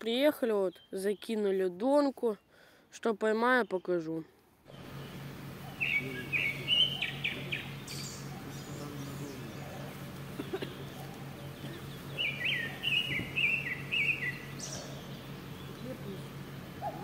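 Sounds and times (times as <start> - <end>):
songbird chirping: 0.0 - 17.0
steady low hum: 4.4 - 17.0.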